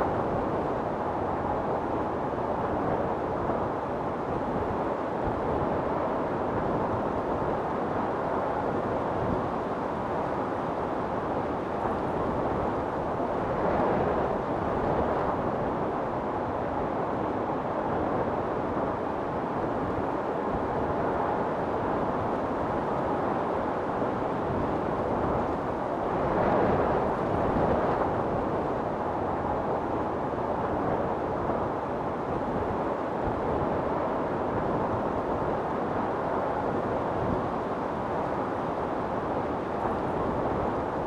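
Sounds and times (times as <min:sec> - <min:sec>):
wind storm roaring: 0:00.0 - 0:41.0.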